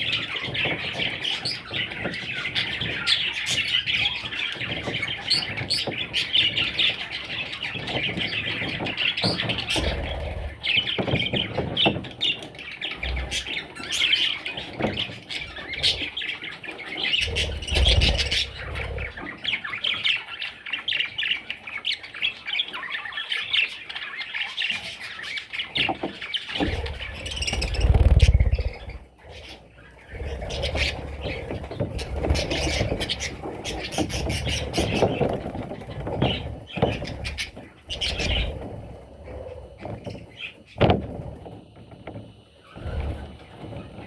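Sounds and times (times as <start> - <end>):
budgerigars chattering and squawking: 0.0 - 41.0
low rumbles: 17.2 - 19.3, 26.6 - 33.5.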